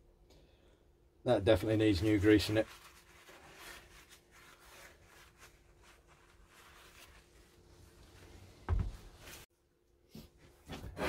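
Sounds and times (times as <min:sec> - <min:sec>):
low thump: 0:08.7 - 0:09.0.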